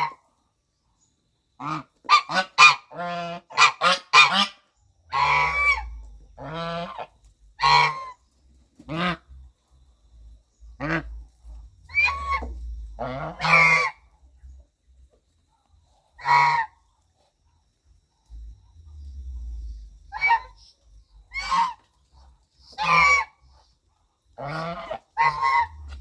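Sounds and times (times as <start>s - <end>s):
goose honking: 1.6s - 8.2s, 8.8s - 9.3s, 10.8s - 11.2s, 11.9s - 14.0s, 16.2s - 16.8s, 20.1s - 20.7s, 21.3s - 21.9s, 22.6s - 23.4s, 24.4s - 26.0s.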